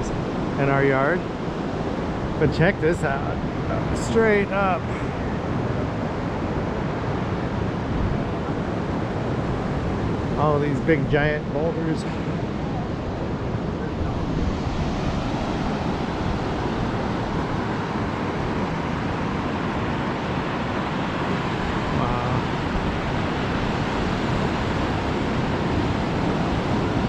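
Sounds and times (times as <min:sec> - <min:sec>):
wind rumbling on microphone: 0:00.0 - 0:27.0
surf breaking on beach: 0:06.4 - 0:27.0.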